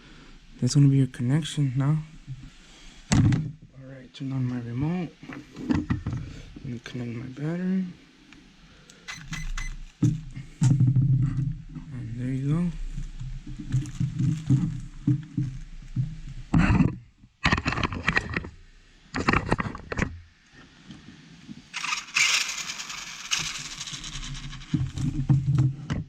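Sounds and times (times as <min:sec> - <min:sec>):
electric motor whirring: 0:09.1 - 0:09.8, 0:21.8 - 0:25.2.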